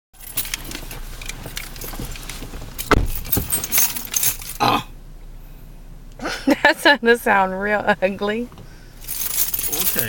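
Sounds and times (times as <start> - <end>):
heavier knock: 2.9 - 3.5.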